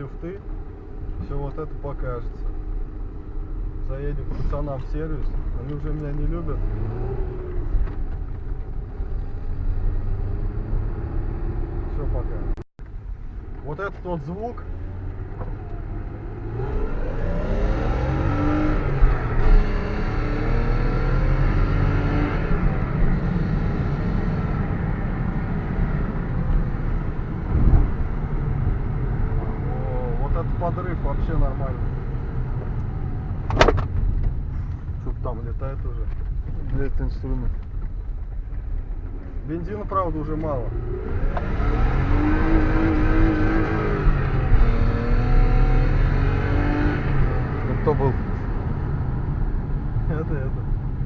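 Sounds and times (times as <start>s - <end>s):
car engine: 0.0s - 51.0s
road and tyre rumble: 0.0s - 51.0s
low thump: 27.4s - 28.1s.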